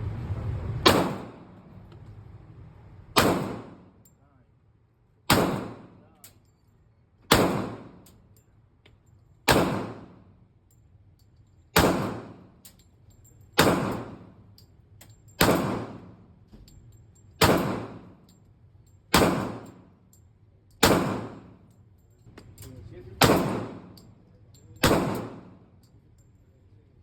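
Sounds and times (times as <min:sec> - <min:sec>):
gunshots with ringing tail: 0:00.8 - 0:01.8, 0:03.2 - 0:04.0, 0:05.3 - 0:06.0, 0:07.3 - 0:08.0, 0:09.5 - 0:10.2, 0:11.8 - 0:12.5, 0:13.6 - 0:14.4, 0:15.4 - 0:16.2, 0:17.4 - 0:18.2, 0:19.1 - 0:19.8, 0:20.8 - 0:21.6, 0:23.2 - 0:24.0, 0:24.8 - 0:25.7.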